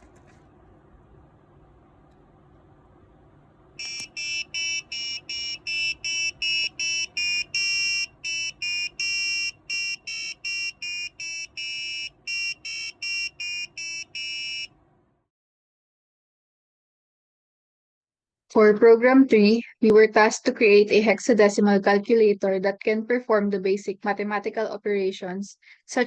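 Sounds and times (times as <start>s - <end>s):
buzzer beeping: 3.8s - 14.7s.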